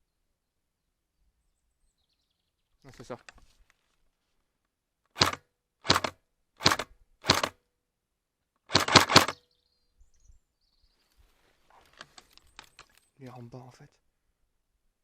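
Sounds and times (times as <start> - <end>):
airsoft gun firing bursts: 5.2 - 7.6, 8.7 - 9.4.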